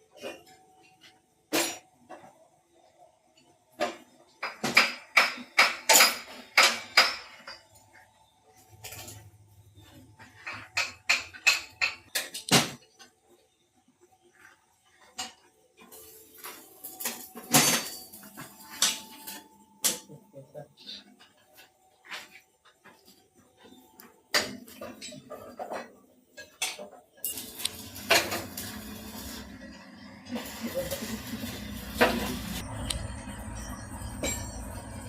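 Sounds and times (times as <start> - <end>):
metal parts clanking: 24.4 - 32.6.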